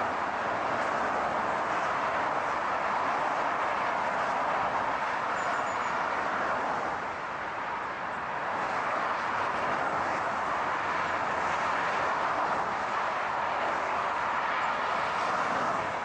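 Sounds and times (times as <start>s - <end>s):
moving car rushing noise: 6.2s - 16.0s.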